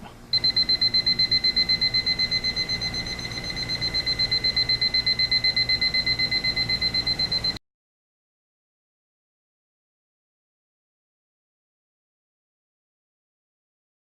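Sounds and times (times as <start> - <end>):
rapid high-pitched alarm beeps: 0.3 - 7.6.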